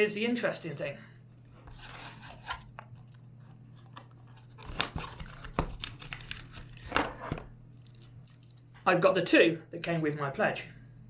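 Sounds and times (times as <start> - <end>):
steady low hum: 0.0 - 11.0
packaging clicks and rustles: 4.0 - 7.3.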